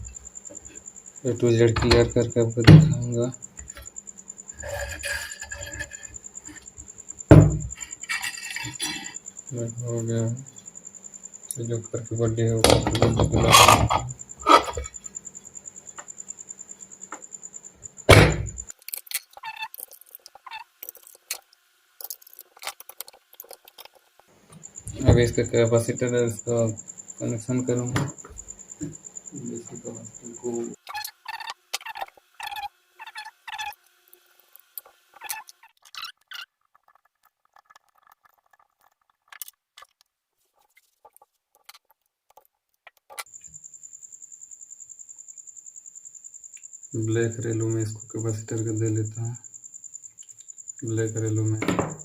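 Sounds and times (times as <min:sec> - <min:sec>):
small clicks and scrapes: 0:04.6 - 0:06.8, 0:07.7 - 0:09.2, 0:18.7 - 0:24.3, 0:30.8 - 0:43.4
heavy metal knock: 0:07.3 - 0:07.7.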